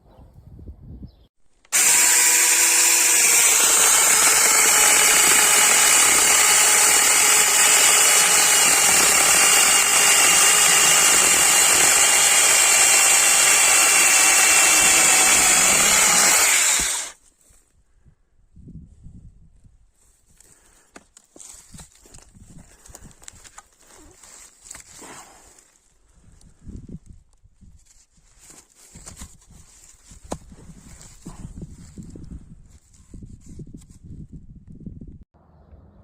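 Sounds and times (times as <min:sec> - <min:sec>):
electric chainsaw running: 0:01.7 - 0:17.2.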